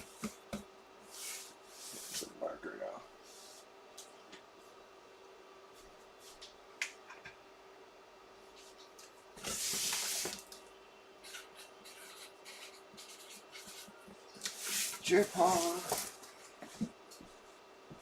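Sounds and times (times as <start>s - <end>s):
marker scratching on paper: 11.2s - 13.9s.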